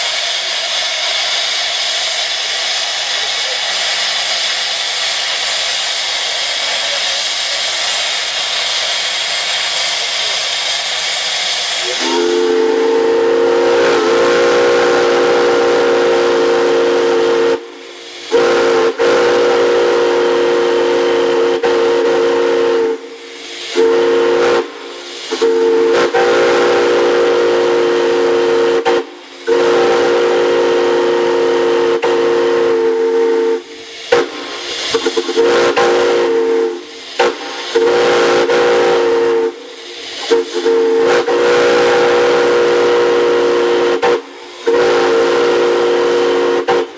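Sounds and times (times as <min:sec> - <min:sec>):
steam hissing: 0:00.0 - 0:46.9
steam whistle blasts: 0:11.7 - 0:46.9.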